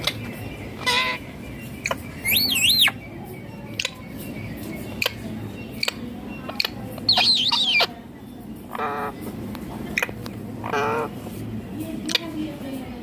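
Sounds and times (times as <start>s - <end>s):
parakeet warbling whistled calls: 2.2s - 3.0s, 7.1s - 7.9s.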